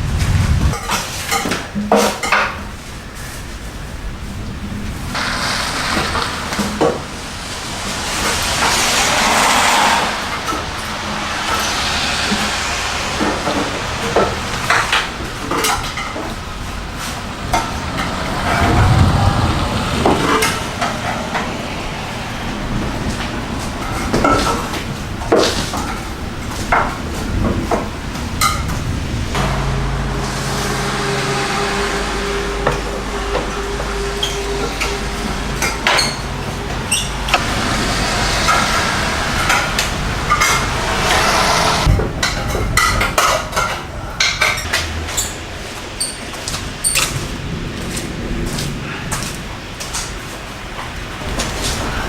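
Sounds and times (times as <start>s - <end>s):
steady background noise: 0.0s - 52.0s
low hum of held tones: 10.6s - 43.2s.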